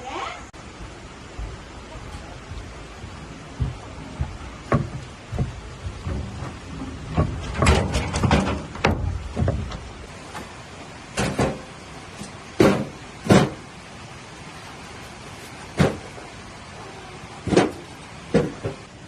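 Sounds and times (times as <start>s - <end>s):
knocks: 3.5s - 10.5s, 12.6s - 13.6s, 15.8s - 16.2s, 17.5s - 18.9s.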